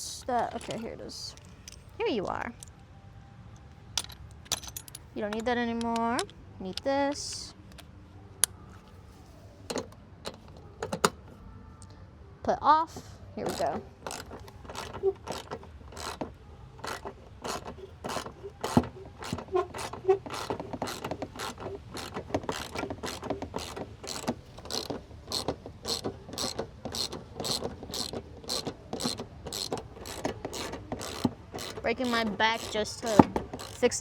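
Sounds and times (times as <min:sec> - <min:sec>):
ratchet wrench clicking: 0:13.5 - 0:34.0.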